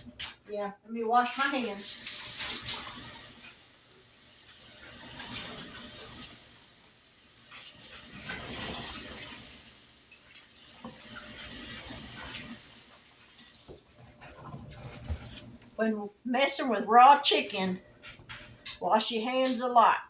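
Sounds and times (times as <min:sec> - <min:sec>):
faucet water running on hands: 0:01.1 - 0:15.7.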